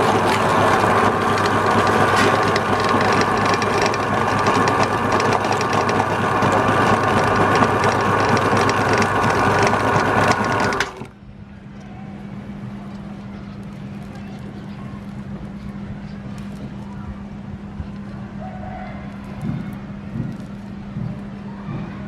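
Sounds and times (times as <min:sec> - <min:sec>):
electric meat grinder whirring: 0:00.0 - 0:11.1.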